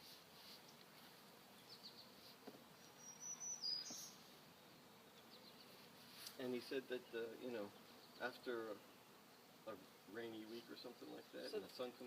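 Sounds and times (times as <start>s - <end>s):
faint high bird chirps: 2.8s - 4.3s.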